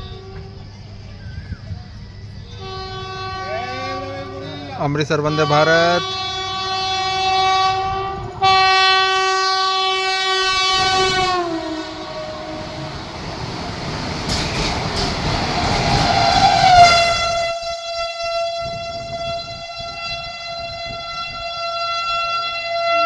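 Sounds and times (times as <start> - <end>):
rushing rumble of passing train: 0.0 - 23.0
train horn two-note chord: 2.6 - 13.2, 16.4 - 23.0.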